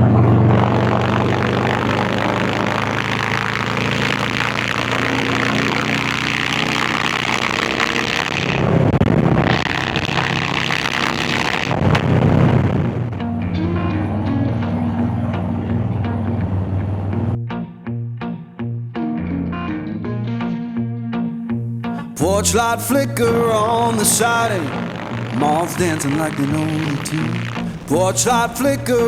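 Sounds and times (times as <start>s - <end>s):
motorcycle exhaust: 0.0s - 17.4s, 23.3s - 29.0s
road hiss: 0.4s - 13.1s, 23.8s - 29.0s
music: 13.1s - 24.0s.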